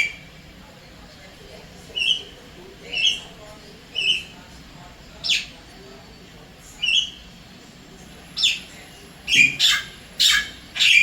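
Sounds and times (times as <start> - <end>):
bird giving harsh calls: 9.3 - 11.0.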